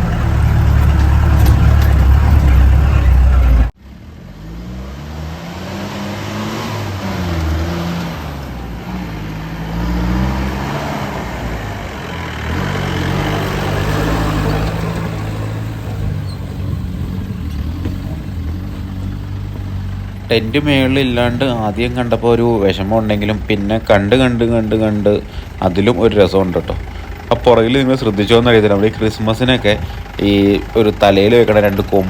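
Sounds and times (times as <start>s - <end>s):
off-road vehicle engine revving: 0.0s - 32.0s.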